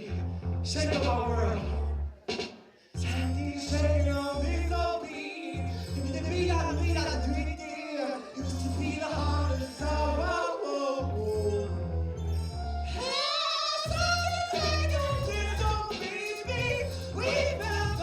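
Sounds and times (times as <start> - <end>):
sung vocal: 0.0 - 2.0, 3.0 - 12.0, 12.9 - 18.0
deep sustained bass notes: 0.1 - 2.1, 3.0 - 4.9, 13.9 - 15.8, 16.5 - 18.0.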